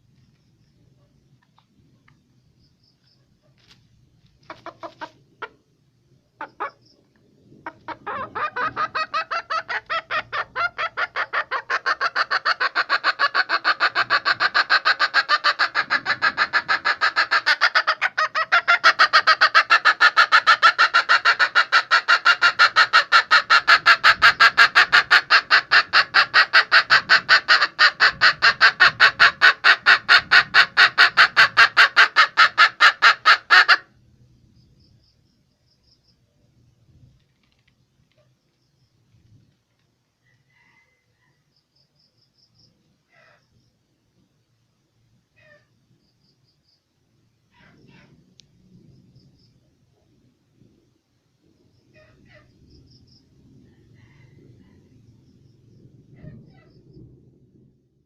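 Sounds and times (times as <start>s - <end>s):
hen call clucking: 4.4s - 5.6s, 6.4s - 6.9s, 7.6s - 33.9s.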